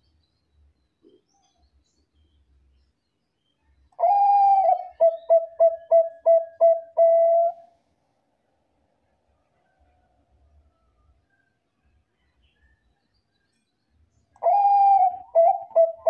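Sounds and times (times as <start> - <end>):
dove cooing: 4.0 - 7.6, 14.4 - 16.0.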